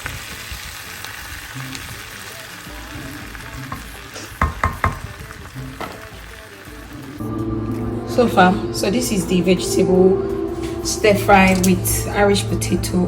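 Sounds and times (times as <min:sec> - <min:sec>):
food sizzling in a pan: 0:00.0 - 0:09.9.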